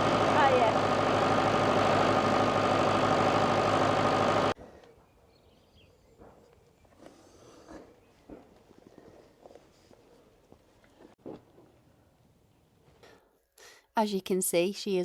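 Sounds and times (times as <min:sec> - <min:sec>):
tractor engine idling: 0:00.0 - 0:04.6.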